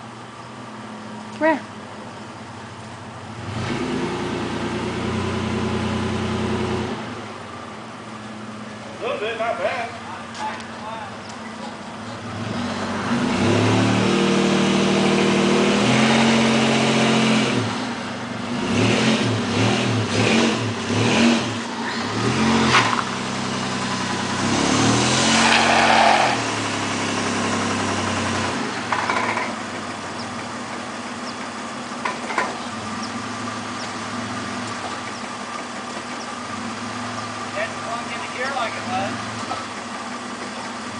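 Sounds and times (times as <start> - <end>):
truck engine idling and revving: 0.0 - 40.9.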